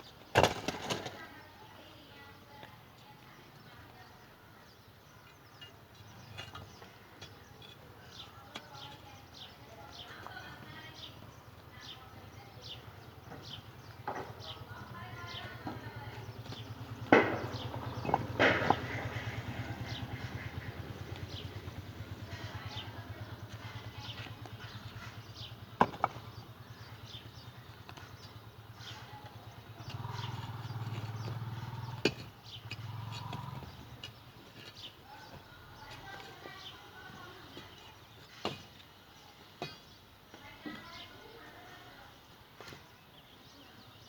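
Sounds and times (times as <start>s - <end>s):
sharp knocks: 17.0s - 19.2s.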